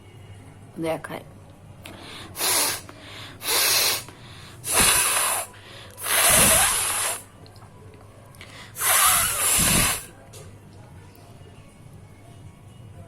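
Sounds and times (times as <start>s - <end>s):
person blowing nose: 2.1s - 7.3s, 8.8s - 10.1s.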